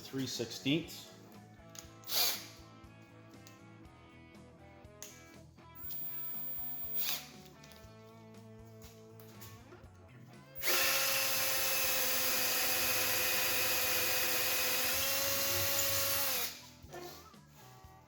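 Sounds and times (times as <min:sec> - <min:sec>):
quiet background music: 0:00.0 - 0:18.0
battery drill drilling metal: 0:02.0 - 0:02.5, 0:05.8 - 0:07.3, 0:10.6 - 0:16.6.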